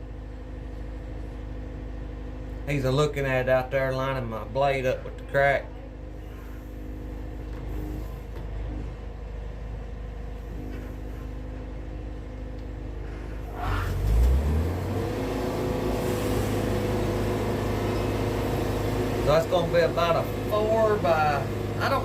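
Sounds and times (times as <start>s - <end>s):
sawmill engine revving: 13.4s - 22.0s.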